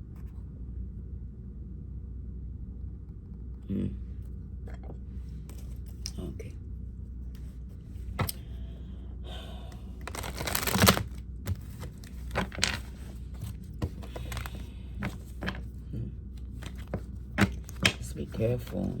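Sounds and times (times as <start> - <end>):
cards riffling: 10.0 - 15.7, 16.4 - 18.1.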